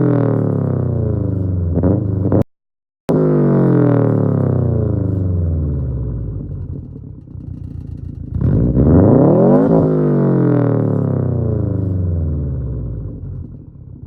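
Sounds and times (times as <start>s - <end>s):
car engine accelerating hard: 8.3s - 13.4s.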